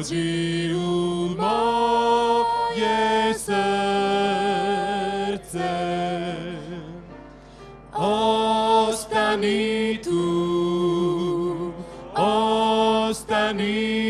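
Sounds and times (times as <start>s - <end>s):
voices singing a slow hymn: 0.0s - 7.2s, 7.9s - 14.0s.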